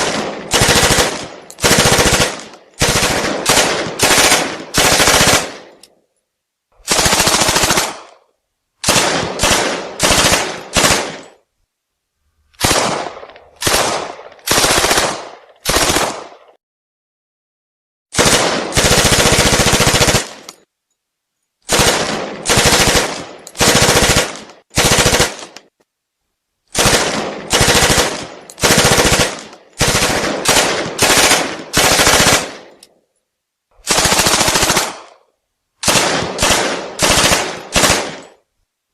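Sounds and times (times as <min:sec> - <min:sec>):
submachine gun firing bursts: 0:00.0 - 0:05.8, 0:06.8 - 0:08.1, 0:08.8 - 0:11.3, 0:12.6 - 0:16.4, 0:18.1 - 0:20.5, 0:21.7 - 0:25.6, 0:26.7 - 0:32.8, 0:33.8 - 0:35.2, 0:35.8 - 0:38.4.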